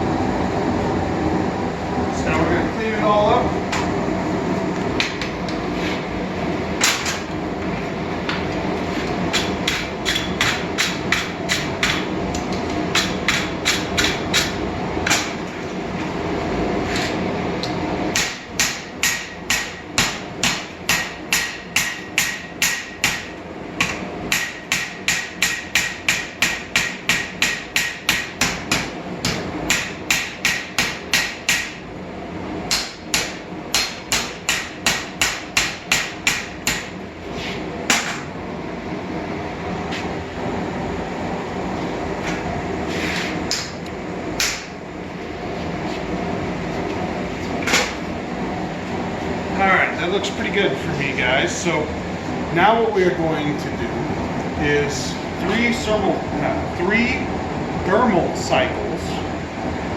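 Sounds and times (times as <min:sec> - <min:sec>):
hammer striking steel on anvil: 0:09.3 - 0:12.1, 0:12.9 - 0:15.4, 0:18.1 - 0:31.8, 0:32.7 - 0:37.0, 0:44.4 - 0:44.7.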